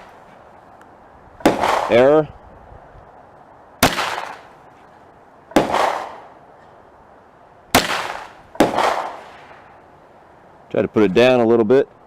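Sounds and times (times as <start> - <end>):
pistol shots: 1.4 - 2.2, 3.8 - 4.6, 5.5 - 6.4, 7.7 - 9.7.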